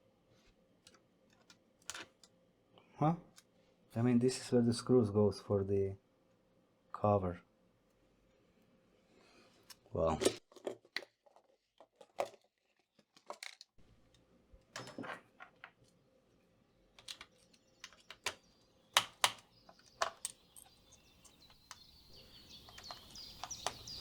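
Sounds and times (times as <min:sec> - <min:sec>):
faint bird chirps: 0:16.6 - 0:24.0
screwdriver clicks and taps: 0:17.0 - 0:18.4, 0:19.0 - 0:20.4
tiny screws set down: 0:17.0 - 0:21.9.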